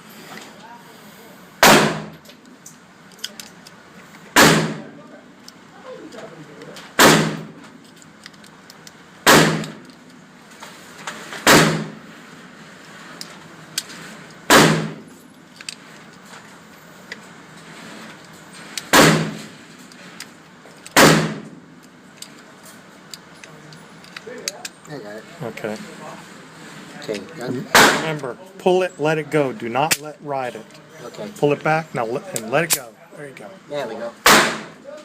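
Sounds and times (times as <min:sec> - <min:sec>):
gunshots with echo: 0:01.6 - 0:02.1, 0:07.0 - 0:07.5.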